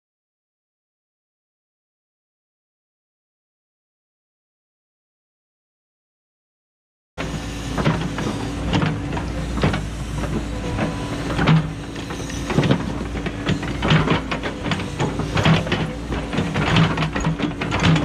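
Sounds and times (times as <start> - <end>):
excavator engine hum: 7.2 - 18.0
metallic clanks and knocks: 7.2 - 18.0.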